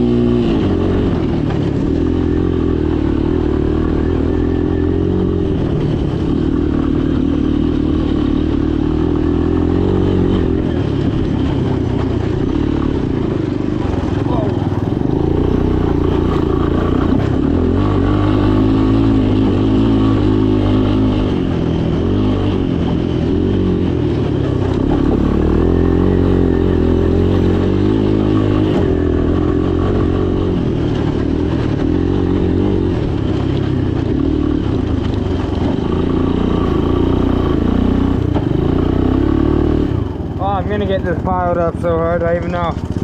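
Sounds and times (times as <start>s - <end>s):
atv engine revving: 0.0s - 43.0s.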